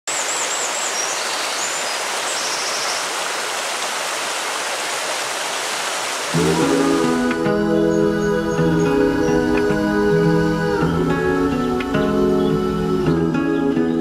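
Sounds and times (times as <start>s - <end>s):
birds chirping: 0.1s - 3.8s, 5.5s - 14.0s
flowing water rushing: 0.1s - 13.0s
soft sustained music chords: 6.4s - 14.0s.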